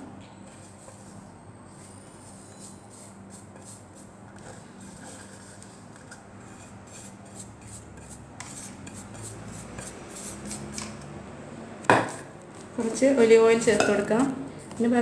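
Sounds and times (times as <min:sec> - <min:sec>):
spoon scraping and tapping containers: 0:11.9 - 0:14.9.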